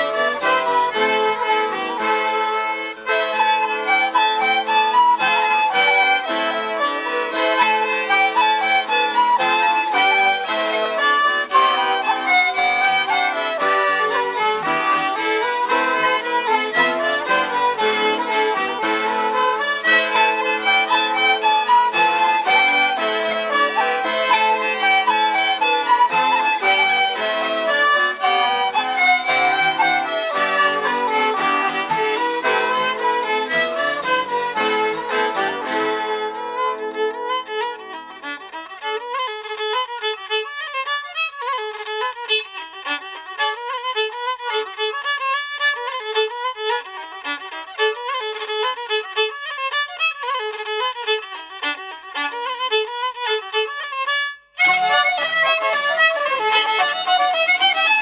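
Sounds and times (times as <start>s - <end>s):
folk band playing dance tune: 0.0s - 40.0s, 54.6s - 58.0s
fiddle melody: 0.0s - 58.0s.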